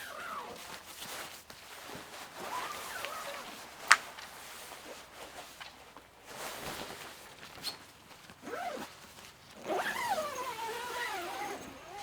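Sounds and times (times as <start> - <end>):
zipper pulled on fabric: 0.0 - 1.0, 2.2 - 3.8, 8.4 - 12.0.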